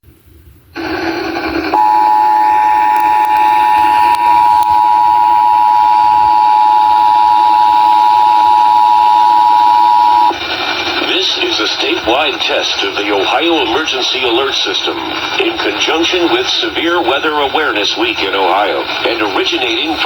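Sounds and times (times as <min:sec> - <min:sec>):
two-tone alert tone: 0:01.8 - 0:10.3.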